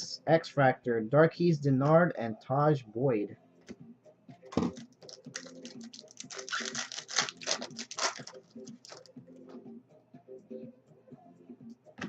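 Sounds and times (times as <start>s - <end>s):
trading cards and foil wrapper crinkling: 4.6s - 9.1s.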